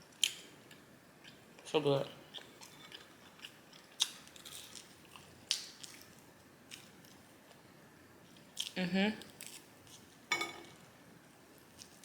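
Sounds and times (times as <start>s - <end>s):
person chewing crunchy food: 2.3s - 7.2s.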